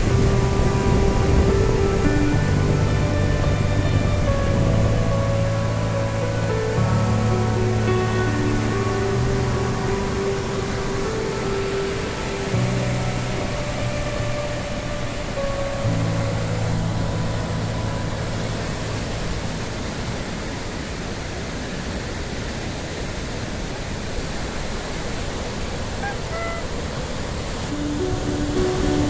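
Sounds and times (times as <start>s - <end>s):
faint background music: 0.0s - 20.2s
waves breaking: 0.0s - 29.0s.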